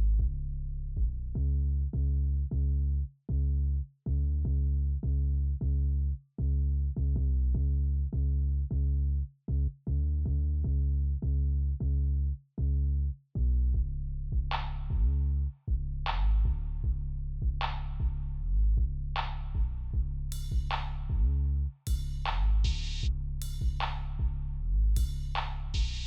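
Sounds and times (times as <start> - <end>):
deep bass line: 0.0 - 26.0
drum-machine beat: 20.3 - 20.8, 21.9 - 22.8, 23.4 - 24.0, 25.0 - 26.0.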